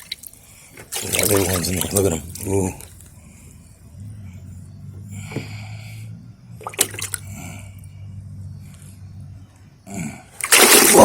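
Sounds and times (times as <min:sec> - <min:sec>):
water splashing and dripping: 0:00.0 - 0:02.6, 0:06.6 - 0:07.3, 0:10.4 - 0:11.0
steady low hum: 0:00.3 - 0:10.8.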